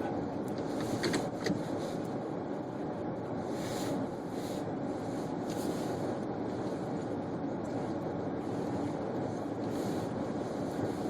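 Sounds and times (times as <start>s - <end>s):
car engine and tyres rumbling: 0.0s - 11.0s.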